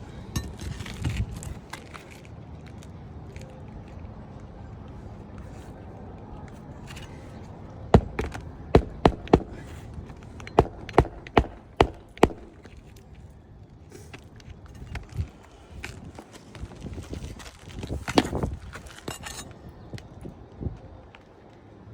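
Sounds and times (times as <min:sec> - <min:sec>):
hammer driving nails into shingles: 0:08.0 - 0:12.8.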